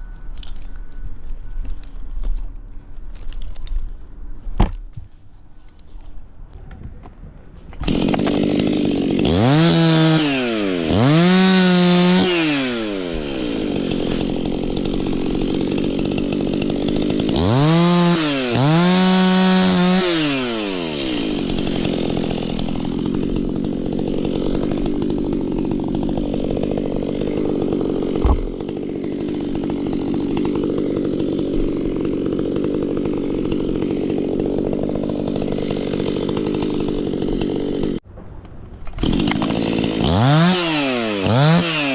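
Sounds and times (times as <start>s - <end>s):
chainsaw revving: 7.9s - 38.0s, 39.0s - 41.9s.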